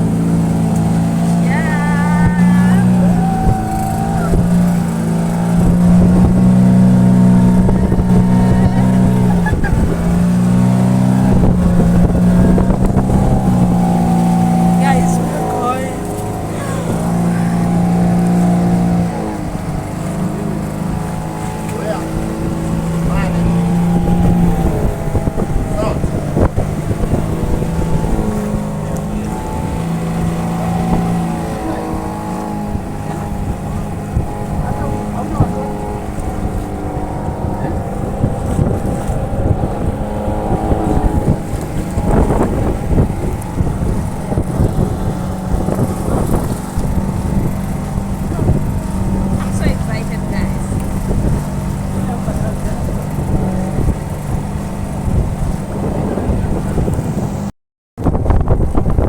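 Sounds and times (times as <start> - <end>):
boat engine droning: 0.0 - 59.0
rushing wind: 0.0 - 59.0
water noise: 0.0 - 59.0.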